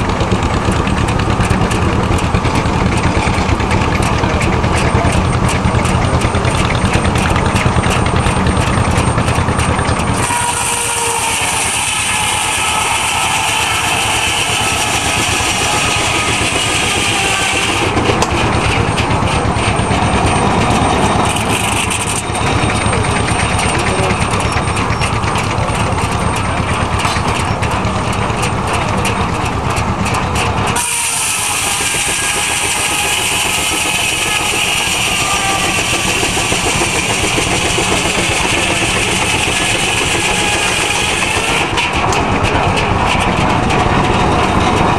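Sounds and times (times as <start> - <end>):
steam sawmill running: 0.0 - 44.9.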